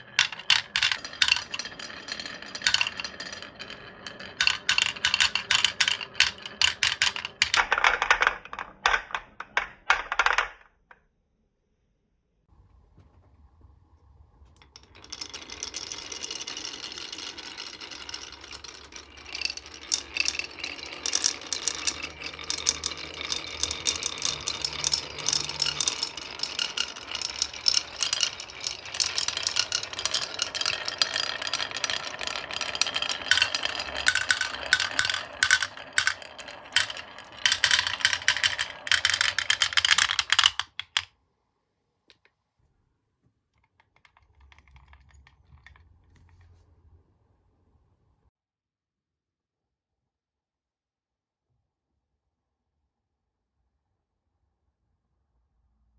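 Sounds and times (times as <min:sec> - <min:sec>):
marbles clicking and knocking: 0:00.0 - 0:10.6, 0:14.6 - 0:41.1, 0:43.7 - 0:46.2
marbles rolling on wooden track: 0:00.0 - 0:10.6, 0:13.0 - 0:41.1, 0:43.6 - 0:46.6.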